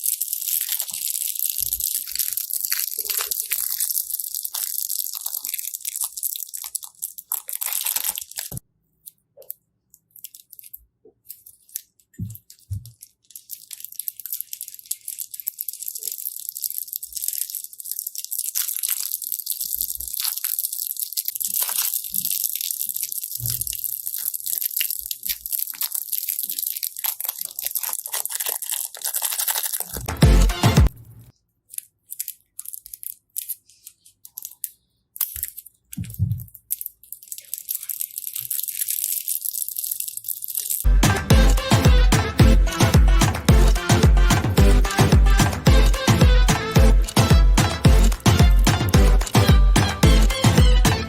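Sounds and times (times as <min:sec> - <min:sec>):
slime crackling when squeezed: 0:00.0 - 0:08.6, 0:11.4 - 0:30.8, 0:31.8 - 0:40.9.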